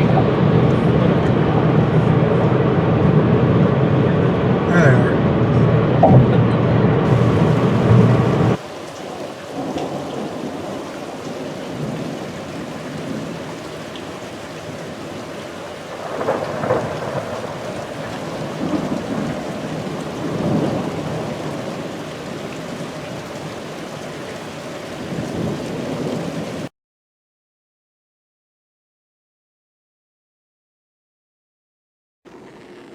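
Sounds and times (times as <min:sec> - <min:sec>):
thunder rumbling: 0:00.0 - 0:26.7
loud muffled sound: 0:06.0 - 0:08.6
steady rain: 0:07.0 - 0:26.7.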